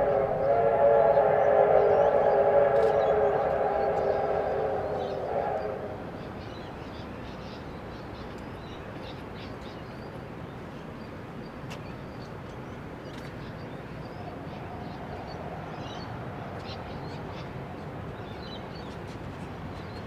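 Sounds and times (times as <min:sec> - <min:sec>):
train whistle chord: 0:00.0 - 0:06.6.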